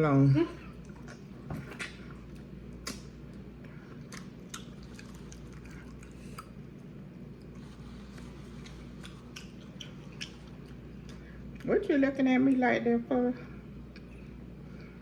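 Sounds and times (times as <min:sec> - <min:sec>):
steady low hum: 0:00.0 - 0:15.0
person chewing food: 0:00.6 - 0:11.7.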